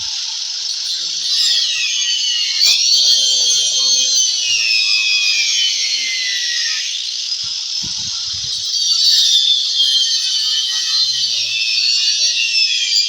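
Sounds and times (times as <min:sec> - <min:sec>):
angle grinder whining: 0:00.0 - 0:13.0.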